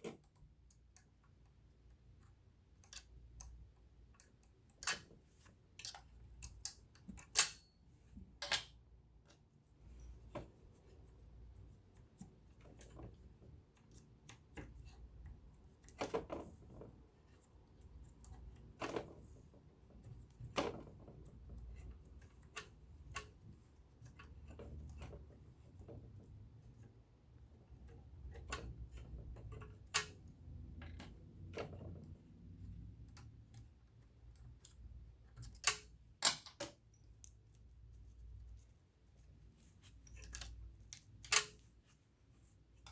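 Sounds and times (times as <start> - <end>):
metal parts clicking and tapping: 5.7 - 7.7, 32.8 - 37.6.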